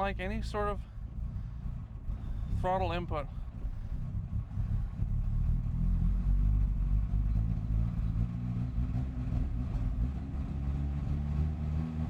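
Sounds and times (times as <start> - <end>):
car engine rough idle: 0.0 - 8.6.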